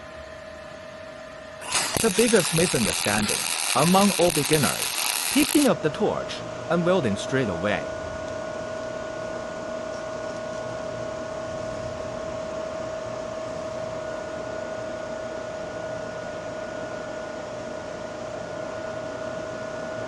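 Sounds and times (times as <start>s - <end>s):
machine hum with hiss: 0.0s - 7.1s.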